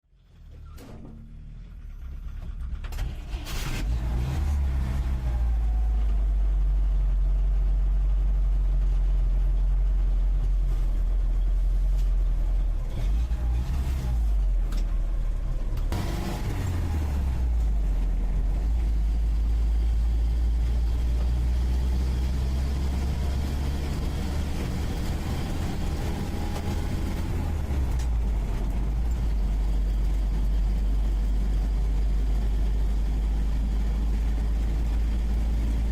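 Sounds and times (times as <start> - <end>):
car engine droning: 0.2 - 35.9.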